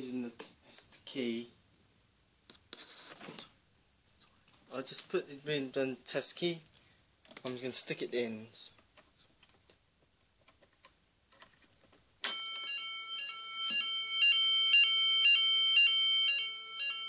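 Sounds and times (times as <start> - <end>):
two-pitch alarm tone: 12.3 - 17.0.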